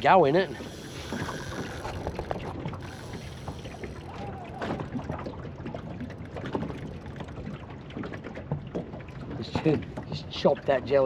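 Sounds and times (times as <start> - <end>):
water lapping against boat: 0.0 - 11.0.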